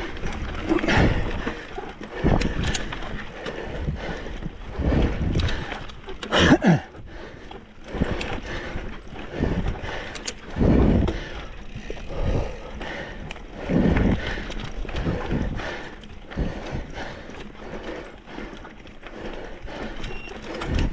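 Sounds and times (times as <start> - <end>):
mountain bike tyre noise: 0.0 - 20.9
bike knocks and rattles: 18.9 - 20.9.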